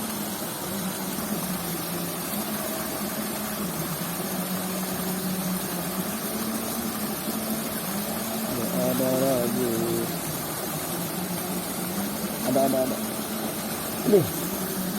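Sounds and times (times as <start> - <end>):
low motor hum: 0.0 - 14.9
water rushing in a ditch: 0.0 - 14.9.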